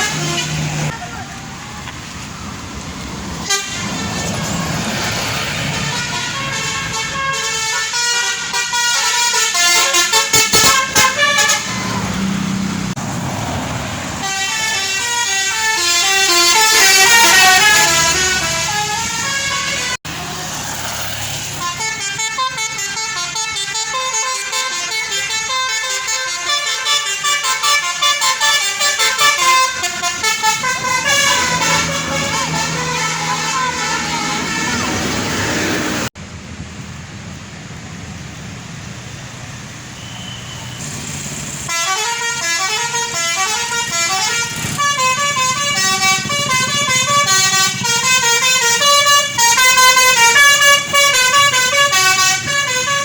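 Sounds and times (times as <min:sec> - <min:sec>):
multi-tone bus horns playing tunes: 0:00.0 - 0:01.2, 0:03.4 - 0:04.2, 0:05.3 - 0:13.0, 0:14.2 - 0:20.6, 0:21.5 - 0:36.1, 0:41.6 - 0:53.0.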